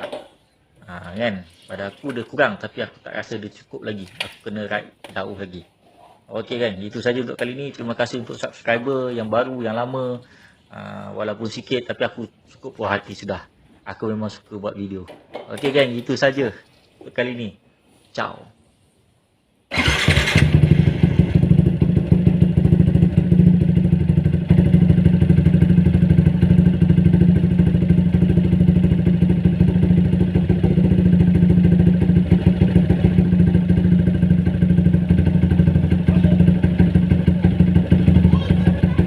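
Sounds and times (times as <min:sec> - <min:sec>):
motorcycle engine idling: 0:19.8 - 0:39.0.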